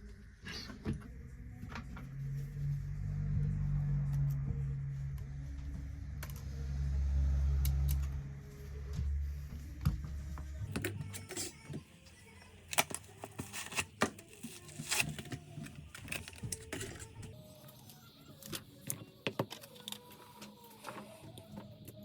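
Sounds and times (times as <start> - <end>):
bass line music: 1.1 - 11.6.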